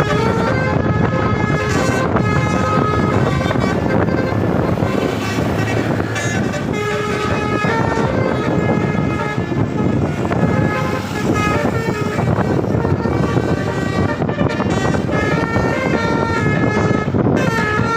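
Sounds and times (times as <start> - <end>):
engine and road rumble: 0.0 - 17.9
musical bus air horn tune: 0.0 - 17.9.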